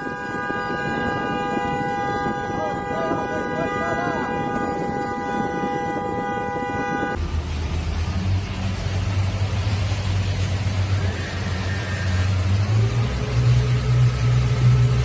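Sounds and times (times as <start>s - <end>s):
horn blast: 0.0s - 7.2s.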